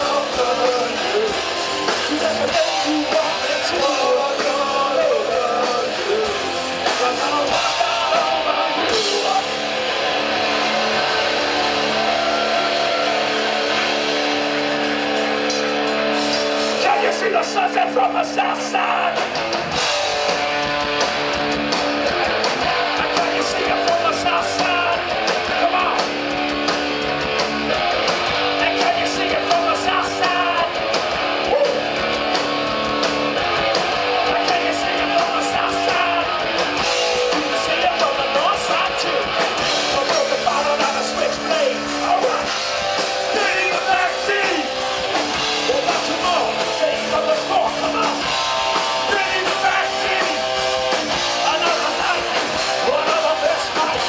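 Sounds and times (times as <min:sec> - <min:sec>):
person singing: 0:00.0 - 0:14.0, 0:22.8 - 0:26.1, 0:28.6 - 0:30.8, 0:34.2 - 0:42.6, 0:43.3 - 0:44.8, 0:48.9 - 0:50.7, 0:51.3 - 0:54.0
bass and drums: 0:00.0 - 0:54.0
strummed guitars: 0:00.0 - 0:54.0.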